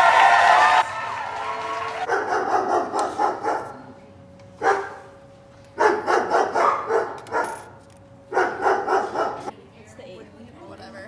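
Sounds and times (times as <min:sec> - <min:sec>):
dog barking: 0:02.1 - 0:03.8, 0:04.6 - 0:05.1, 0:05.8 - 0:07.7, 0:08.3 - 0:09.5.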